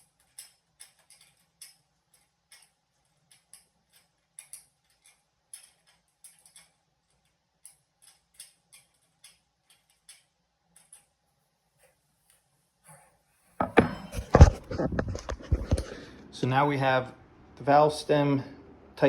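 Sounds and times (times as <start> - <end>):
faint small clicks and ticks: 0.0 - 12.6.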